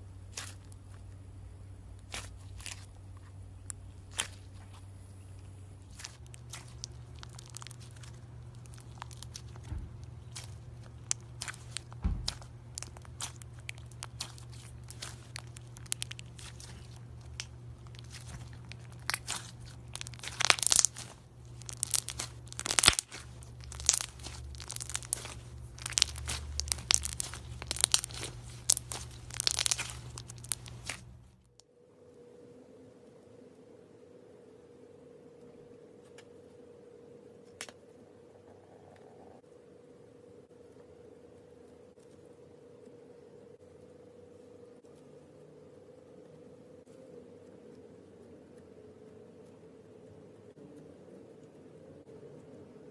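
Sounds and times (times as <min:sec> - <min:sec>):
steady low hum: 0:00.0 - 0:52.9
slime crackling and popping: 0:00.3 - 0:00.8, 0:02.0 - 0:02.9, 0:03.6 - 0:04.5, 0:05.8 - 0:31.6.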